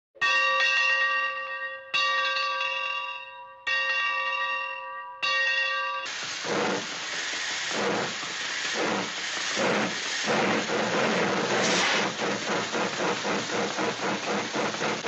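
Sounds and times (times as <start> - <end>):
loud steady hiss: 6.1 - 15.0.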